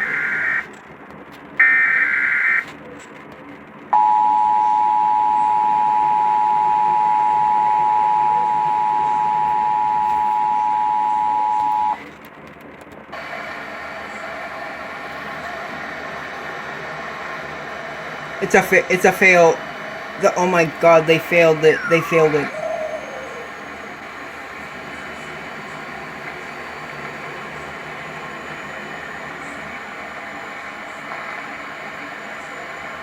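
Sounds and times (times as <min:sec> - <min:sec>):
warbling data burst: 0:00.0 - 0:00.7, 0:04.0 - 0:12.0, 0:18.5 - 0:33.0
two-tone attention signal: 0:04.0 - 0:12.0, 0:20.2 - 0:27.1.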